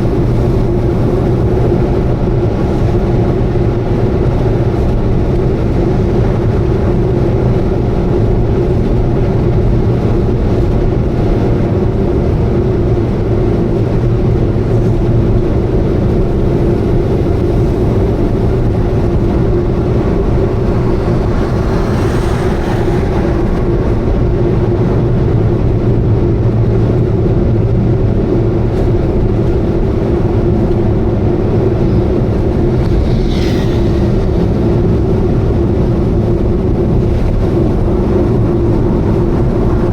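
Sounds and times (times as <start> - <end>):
car engine and road drone: 0.0 - 39.9
brief rushing swell: 17.6 - 25.5, 32.0 - 36.4.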